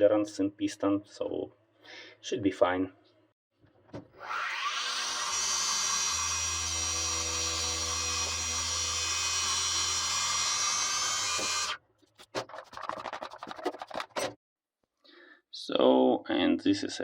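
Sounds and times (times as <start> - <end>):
milling machine spindle cutting: 4.2 - 11.8.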